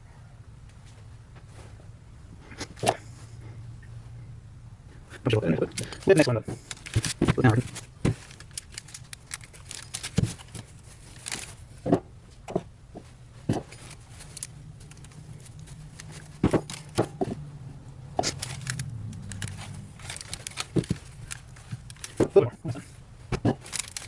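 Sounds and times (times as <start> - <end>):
low steady hum: 0.0 - 24.0
clicks and knocks of metal parts: 5.5 - 17.4, 18.2 - 24.0.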